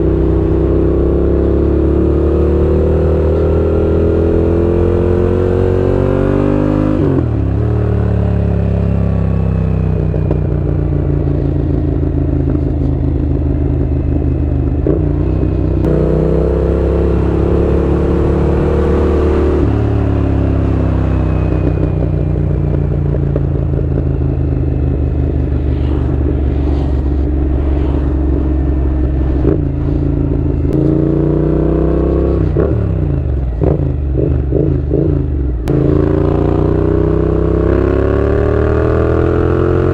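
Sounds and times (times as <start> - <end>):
motorcycle engine revving: 0.0 - 39.9
exhaust crackles: 21.7 - 31.2.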